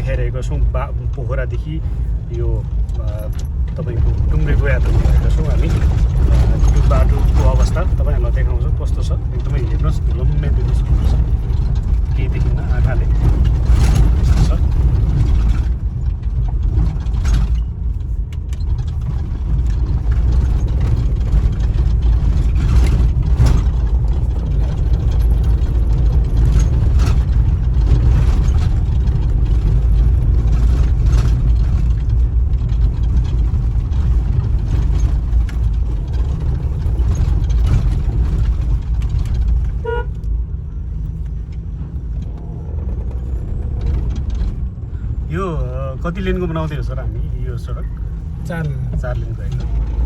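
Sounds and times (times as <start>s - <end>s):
knocks and rattles: 0.0s - 50.0s
vehicle engine and road rumble: 0.0s - 50.0s
car horn toot: 39.8s - 40.2s.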